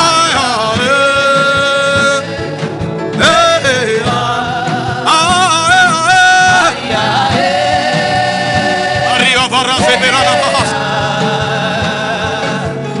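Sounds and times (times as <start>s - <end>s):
sustained musical backing: 0.0s - 13.0s
person singing worship chant: 3.3s - 12.8s.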